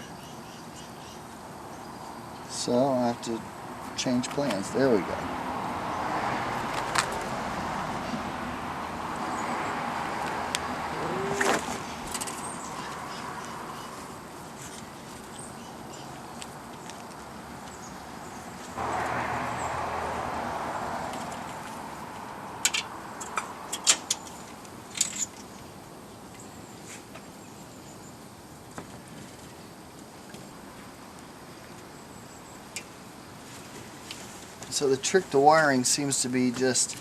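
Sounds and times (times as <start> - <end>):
rustling of hands with wire: 13.9 - 15.5.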